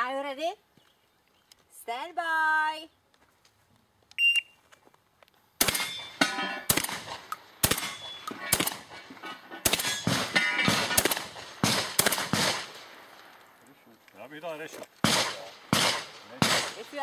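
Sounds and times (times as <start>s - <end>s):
shotgun shots: 5.6s - 13.3s, 15.0s - 17.0s.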